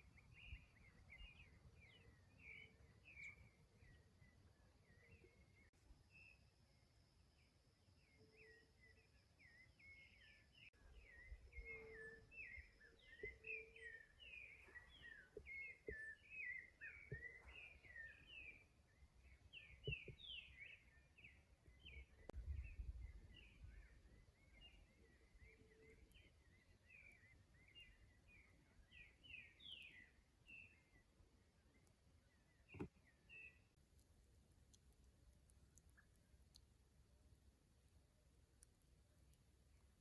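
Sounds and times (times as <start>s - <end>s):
small birds chirping: 0.0s - 6.5s, 7.4s - 40.0s.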